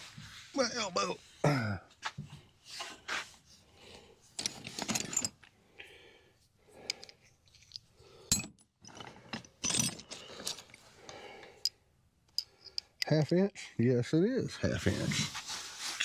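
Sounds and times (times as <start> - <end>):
metal tools clinking: 4.4 - 5.5, 6.9 - 10.9, 11.6 - 13.4.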